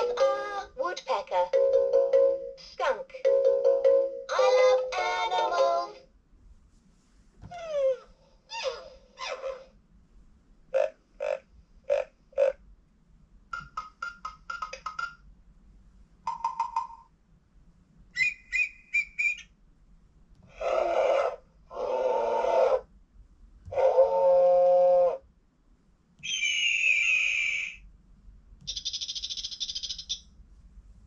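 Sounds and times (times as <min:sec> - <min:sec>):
animal calls from small speaker: 0:07.5 - 0:09.7, 0:10.7 - 0:12.6, 0:20.5 - 0:22.9, 0:23.7 - 0:25.2, 0:26.2 - 0:27.8, 0:28.7 - 0:30.2.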